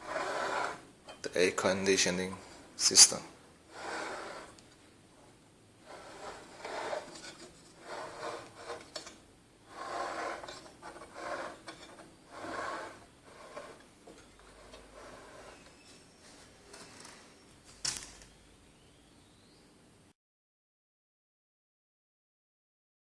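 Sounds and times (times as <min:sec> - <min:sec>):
rubbing and scraping handling noise: 0:00.0 - 0:18.4.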